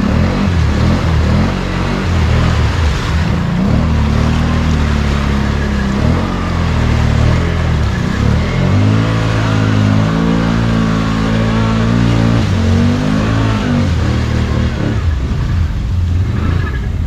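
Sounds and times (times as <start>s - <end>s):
atv engine revving: 0.0s - 17.0s.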